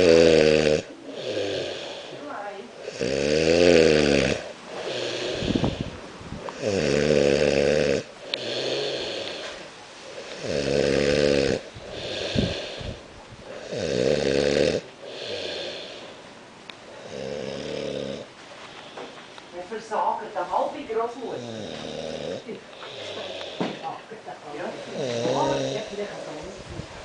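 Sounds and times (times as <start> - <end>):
man snoring: 0.0 - 2.2, 2.8 - 9.6, 10.2 - 16.2, 16.9 - 18.3, 21.4 - 23.9, 24.7 - 26.1
breathy hiss: 0.0 - 26.6.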